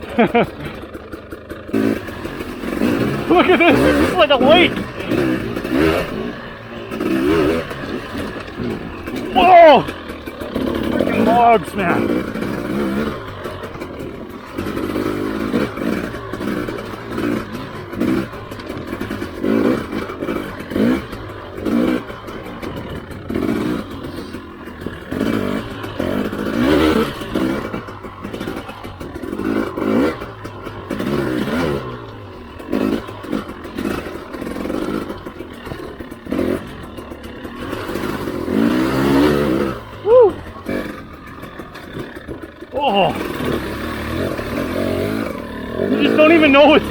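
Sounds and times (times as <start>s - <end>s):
motorcycle engine revving: 0.0s - 46.9s.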